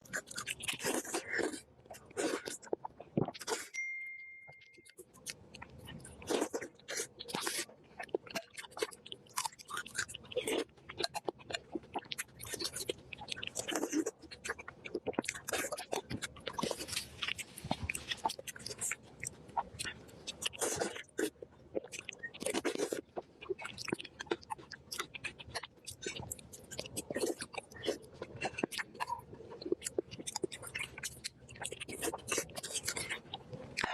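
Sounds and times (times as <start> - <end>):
chewing and crunching food: 0.0 - 3.8, 4.7 - 33.9
steady beep: 3.8 - 4.9.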